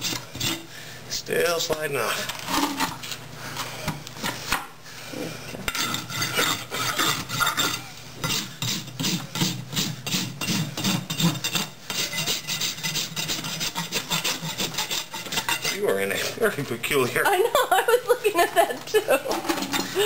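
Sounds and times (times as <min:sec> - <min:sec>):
rasp filing a hoof: 0:00.0 - 0:00.7, 0:05.7 - 0:16.4.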